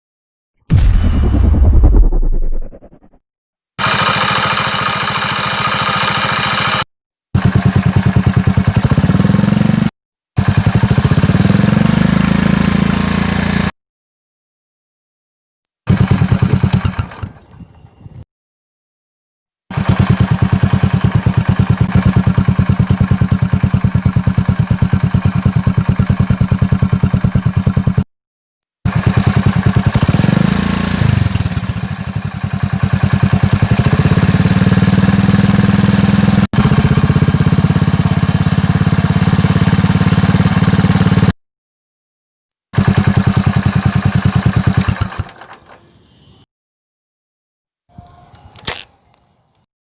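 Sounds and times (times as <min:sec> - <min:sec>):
motorcycle engine running and revving: 0:03.8 - 0:06.8, 0:07.4 - 0:13.7, 0:15.9 - 0:17.5, 0:19.7 - 0:28.1, 0:28.9 - 0:41.4, 0:42.8 - 0:45.3.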